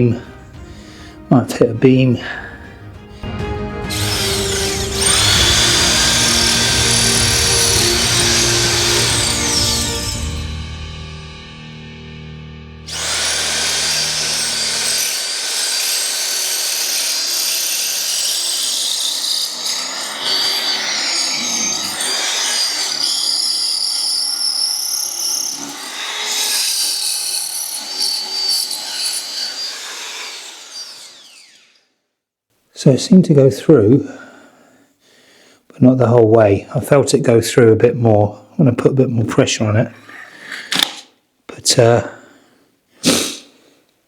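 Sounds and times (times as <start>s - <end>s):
power drill grinding into floor: 2.5s - 11.2s, 12.8s - 31.8s.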